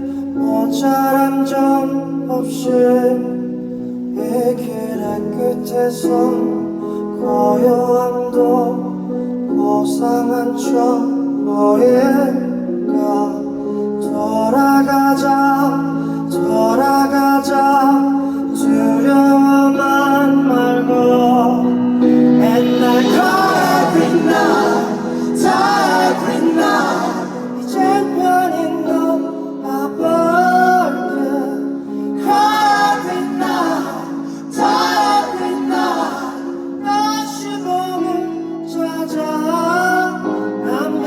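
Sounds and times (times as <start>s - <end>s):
person singing: 4.2s - 41.0s
sustained accompanying chords: 20.6s - 29.8s, 31.8s - 36.9s.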